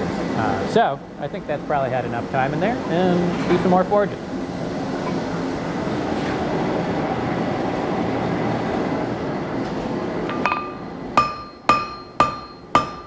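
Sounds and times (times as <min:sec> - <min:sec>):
hammer blows ringing on anvil: 0:10.3 - 0:13.0.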